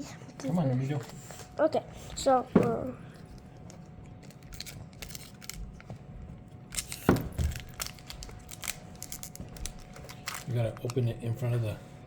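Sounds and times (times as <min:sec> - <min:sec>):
foil wrapper crinkling: 0:03.7 - 0:05.9, 0:06.7 - 0:11.4.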